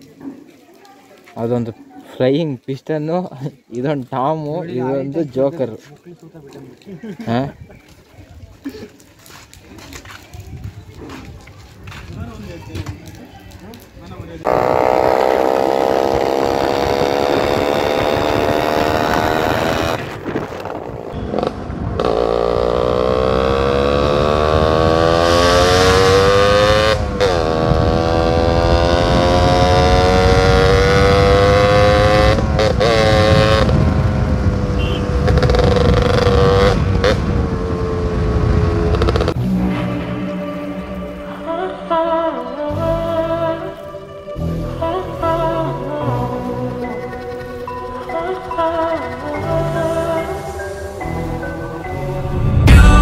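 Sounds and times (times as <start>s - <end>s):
two-stroke motorcycle engine accelerating: 14.4s - 39.4s.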